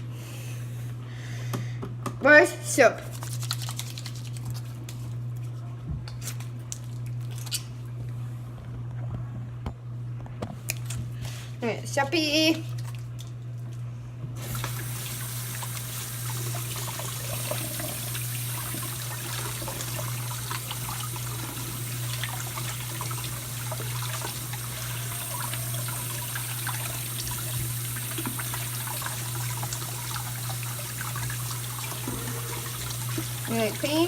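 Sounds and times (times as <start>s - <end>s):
tap water running into sink: 14.4s - 34.0s.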